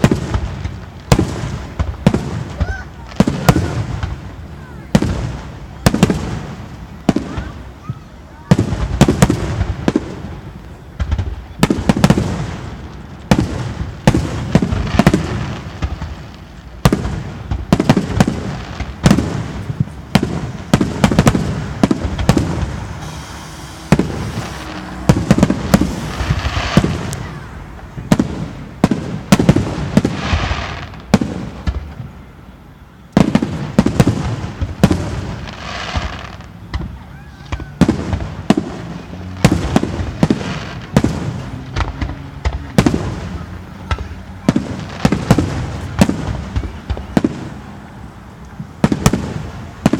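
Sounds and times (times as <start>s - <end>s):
fireworks crackling: 0.0s - 49.9s
fireworks shells bursting: 17.5s - 27.5s.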